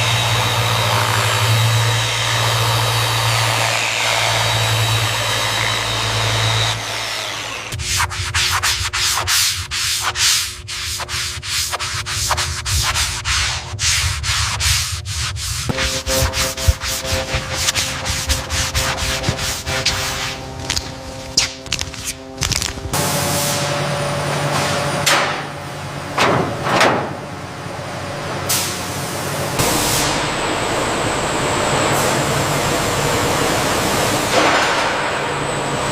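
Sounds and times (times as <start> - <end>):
sanding strokes: 0.0 - 22.7.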